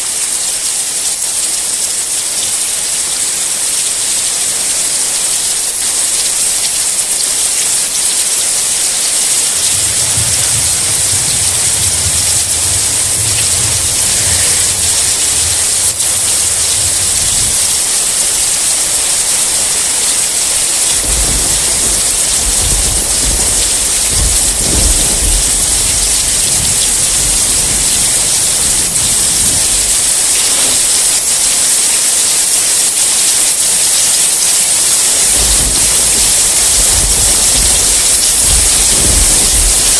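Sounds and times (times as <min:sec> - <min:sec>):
rain hissing: 0:00.0 - 0:39.9
low rolls of thunder: 0:08.6 - 0:31.3, 0:35.1 - 0:39.9.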